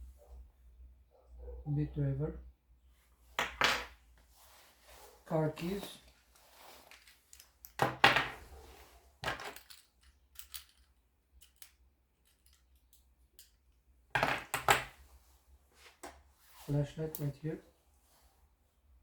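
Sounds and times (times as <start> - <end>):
metal items clattering: 9.2 - 12.6
metal keys clinking: 9.2 - 13.6.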